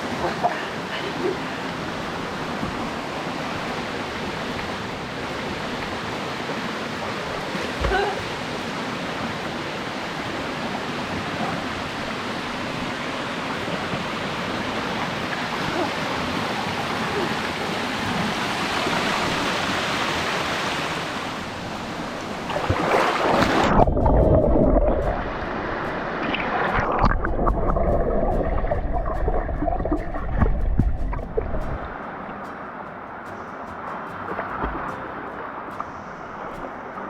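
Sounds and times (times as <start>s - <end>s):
flowing water rushing: 0.0s - 37.0s
dull rumble: 21.4s - 32.0s.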